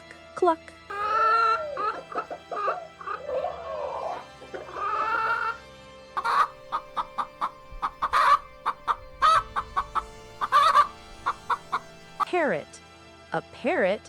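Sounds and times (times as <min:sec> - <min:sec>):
chicken clucking: 0:00.9 - 0:05.6, 0:06.2 - 0:12.3.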